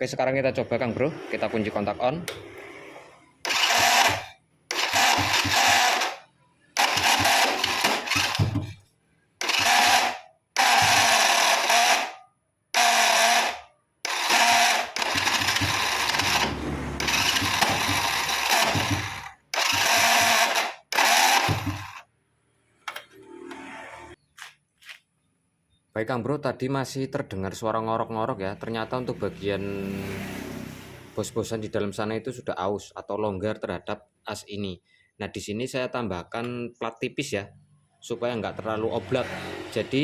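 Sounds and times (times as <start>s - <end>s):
motorcycle starter motor cranking: 3.4s - 8.8s, 9.4s - 22.0s.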